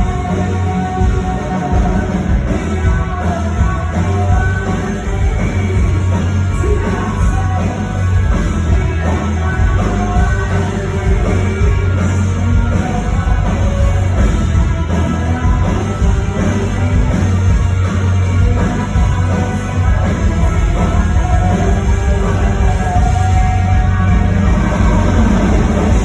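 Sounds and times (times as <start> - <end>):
person singing: 0.0 - 26.0
rock band playing live: 0.0 - 26.0.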